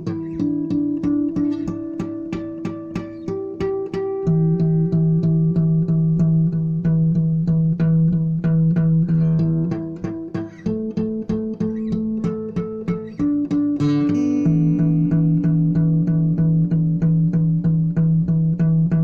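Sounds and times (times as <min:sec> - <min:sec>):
plucked string notes: 0:00.0 - 0:19.0
held low notes: 0:12.3 - 0:19.0.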